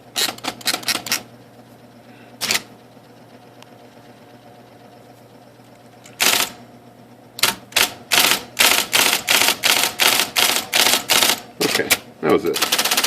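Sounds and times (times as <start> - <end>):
typewriter motor humming: 0.0 - 1.3, 2.4 - 2.7, 6.0 - 6.6, 7.4 - 13.0
typewriter keystrokes: 12.6 - 13.0.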